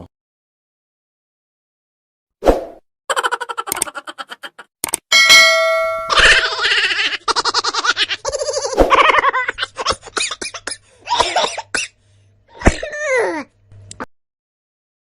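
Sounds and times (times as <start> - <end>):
fast repeated laughing: 3.1 - 4.7, 6.1 - 10.8.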